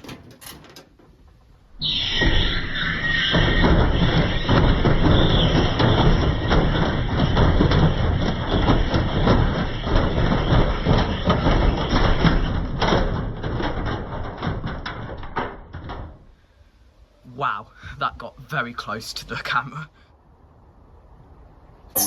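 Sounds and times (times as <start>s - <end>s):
off-balance washing machine banging: 0.0s - 16.4s.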